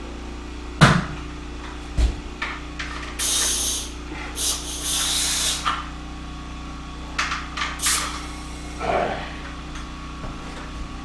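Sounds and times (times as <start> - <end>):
portable generator humming: 0.8 - 11.0
compressed air hissing: 3.2 - 5.8, 7.8 - 9.2.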